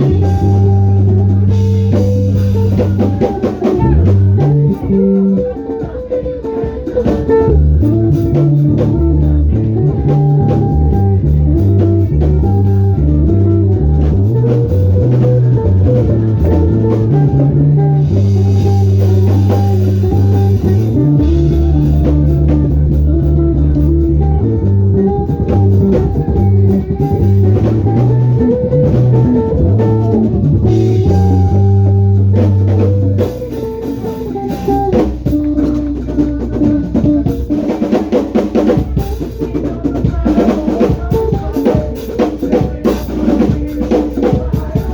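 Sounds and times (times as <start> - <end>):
bass guitar line: 0.0 - 44.9
drum kit: 0.0 - 44.9
instrumental band music: 0.0 - 44.9.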